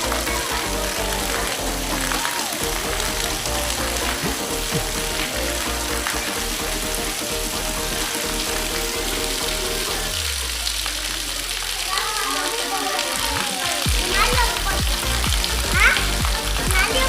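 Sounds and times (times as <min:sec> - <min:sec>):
held music tones: 0:00.0 - 0:11.8
light rain hissing: 0:00.0 - 0:17.0.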